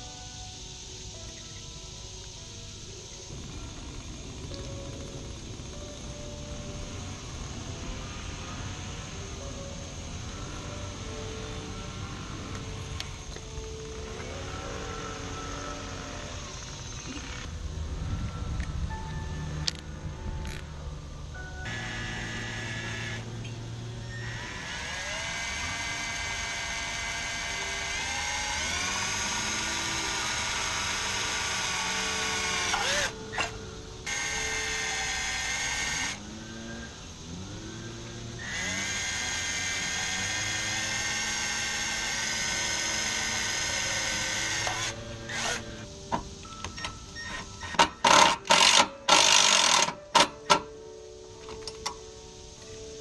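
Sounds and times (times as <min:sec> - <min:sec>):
power drill motor whining: 0:03.3 - 0:17.5, 0:21.6 - 0:45.9, 0:46.5 - 0:50.0.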